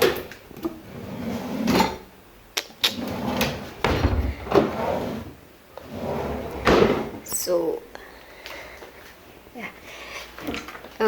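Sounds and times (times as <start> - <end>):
cabinet doors and drawers knocking: 3.3 - 5.3, 6.4 - 7.2
heavy thuds: 3.7 - 4.8.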